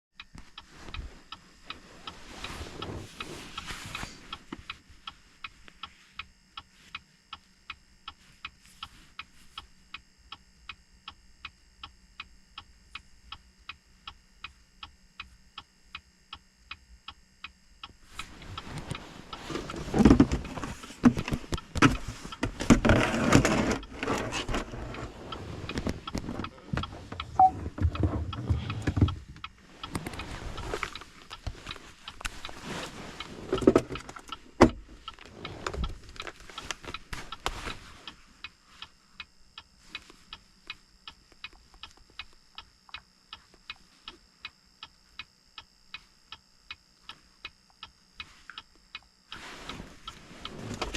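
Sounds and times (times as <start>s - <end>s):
knocking and rustling of handling: 18.2s - 37.9s.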